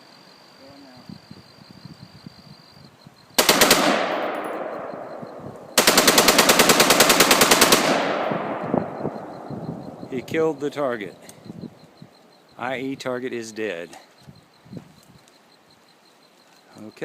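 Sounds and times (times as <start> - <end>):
rapid rifle shots with echo: 3.4 - 10.0.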